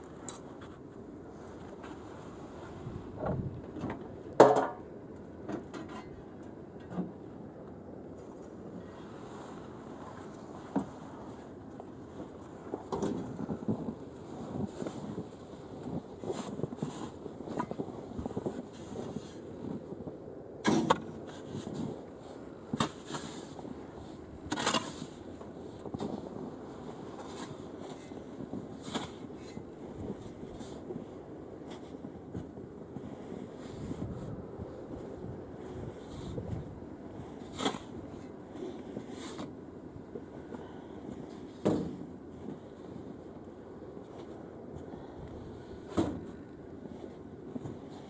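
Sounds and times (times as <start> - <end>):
snow shovel scraping snow: 13.2 - 19.8, 20.7 - 31.0, 37.2 - 39.6.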